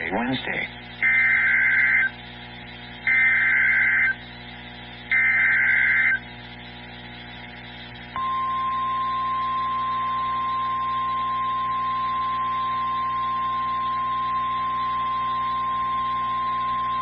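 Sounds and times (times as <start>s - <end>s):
harsh digital data bursts: 0.0s - 2.2s, 3.0s - 4.2s, 4.9s - 6.8s.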